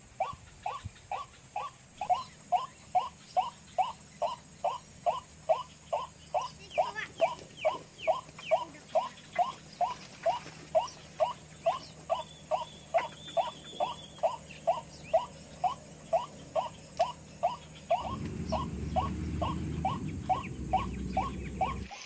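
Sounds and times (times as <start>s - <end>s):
fainter higher bird calls: 0.2s - 22.0s
bird short rising call: 17.6s - 22.0s.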